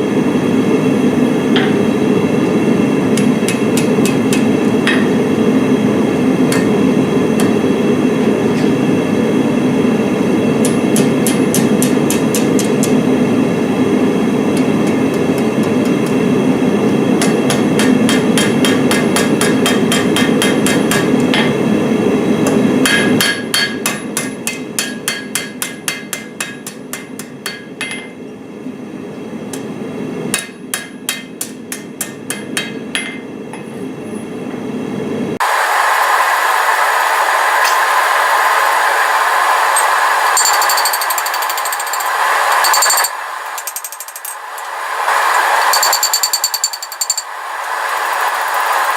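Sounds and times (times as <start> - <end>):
hammer striking steel on anvil: 3.2 - 5.3, 6.5 - 6.8, 10.6 - 13.0, 17.2 - 21.6, 22.4 - 28.2, 30.3 - 33.7.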